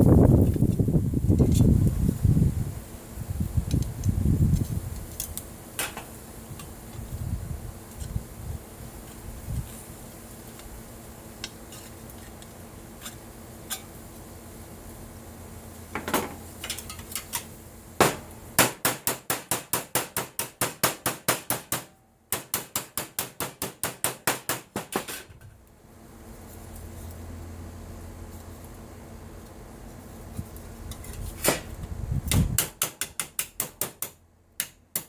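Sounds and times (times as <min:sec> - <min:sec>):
hammer tapping on aluminum: 0:18.0 - 0:25.3, 0:32.3 - 0:35.0.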